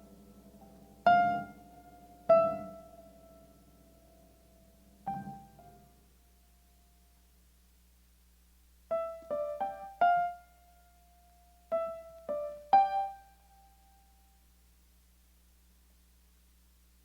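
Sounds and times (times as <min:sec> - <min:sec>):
piano single notes: 0:00.0 - 0:04.0, 0:04.9 - 0:06.0.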